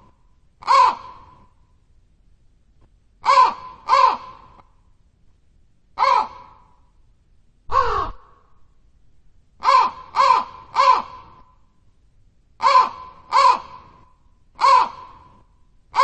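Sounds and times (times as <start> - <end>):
crow cawing: 0.6 - 1.4, 3.2 - 4.6, 6.0 - 6.7, 7.7 - 8.5, 9.6 - 11.5, 12.6 - 15.3.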